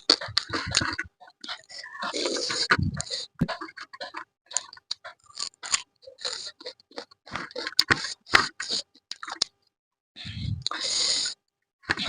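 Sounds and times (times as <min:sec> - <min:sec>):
chewing and crunching: 0:00.0 - 0:09.6.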